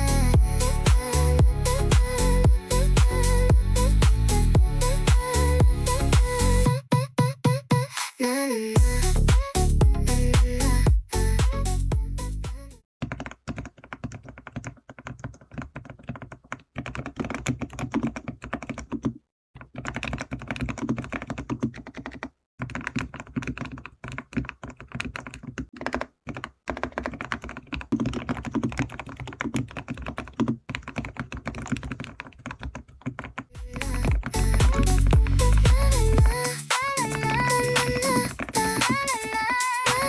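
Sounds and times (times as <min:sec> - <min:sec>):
fast typing on keyboard: 0:13.0 - 0:40.0.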